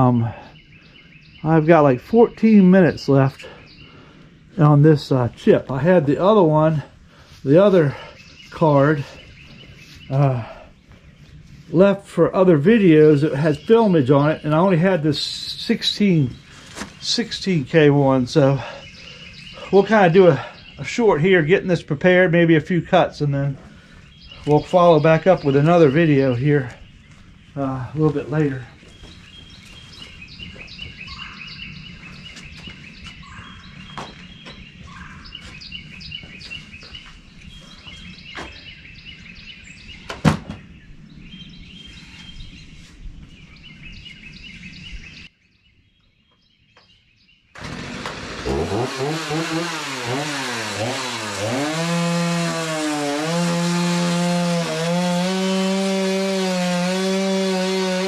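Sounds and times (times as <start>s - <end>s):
birds chirping: 0.0s - 58.0s
chainsaw revving: 47.6s - 58.0s.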